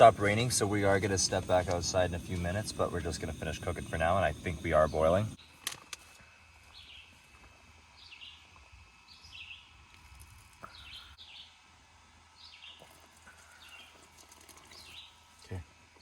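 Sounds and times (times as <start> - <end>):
low steady rumble: 0.0 - 5.4
small bird chirping: 12.4 - 15.6.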